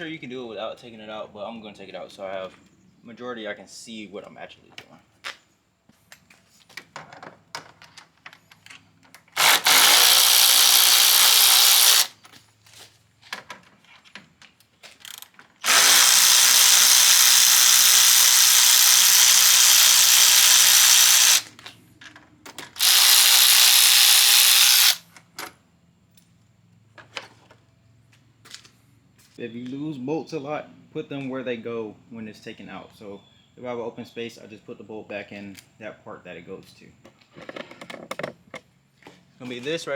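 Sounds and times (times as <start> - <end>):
handling clicks and knocks: 6.1 - 9.4, 37.0 - 38.7
power drill running: 9.4 - 12.2, 15.0 - 21.6, 22.8 - 25.0.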